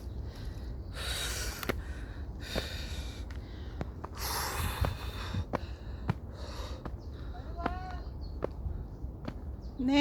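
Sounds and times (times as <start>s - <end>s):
footsteps on a trail: 0.0s - 10.0s
person breathing hard: 0.2s - 7.3s.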